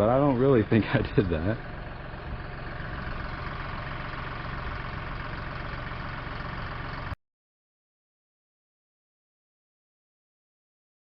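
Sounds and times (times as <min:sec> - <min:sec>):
vehicle engine running: 0:00.0 - 0:07.2.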